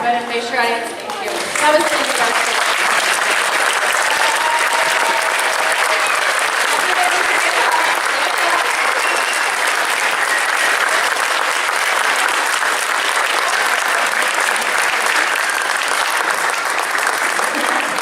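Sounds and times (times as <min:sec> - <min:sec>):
audience applauding: 0:00.9 - 0:18.0
voices: 0:06.7 - 0:09.5.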